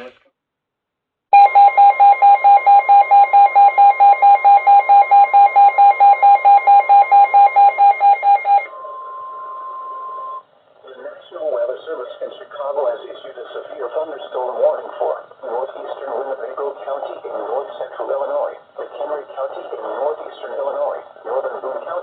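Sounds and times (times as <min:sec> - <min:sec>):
rapid alarm beeping: 0:01.4 - 0:10.4
steady alarm tone: 0:01.4 - 0:10.4.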